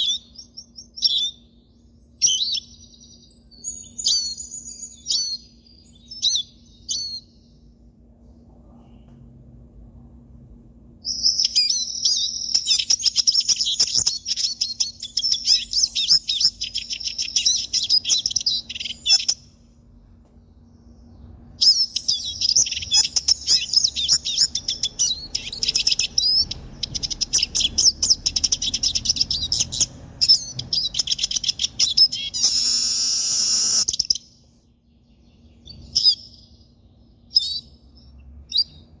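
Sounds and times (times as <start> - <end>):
bird calls: 0.0 - 1.5, 2.2 - 7.4, 11.0 - 19.6, 21.0 - 34.4, 35.1 - 36.6
bird twittering song: 0.0 - 7.7, 11.0 - 39.0
faint steady hum: 0.0 - 39.0.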